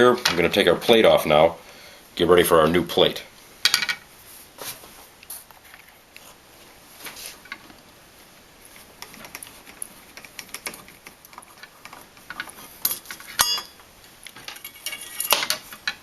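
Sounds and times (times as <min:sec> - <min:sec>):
metal clinks: 0:12.8 - 0:13.8
screwdriver clicking and scraping metal: 0:14.3 - 0:16.0.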